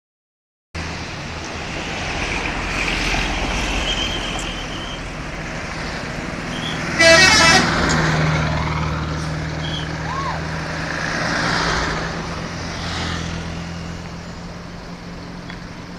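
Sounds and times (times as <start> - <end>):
bus engine running: 0.8 - 15.9
musical bus horn blast: 6.6 - 8.0.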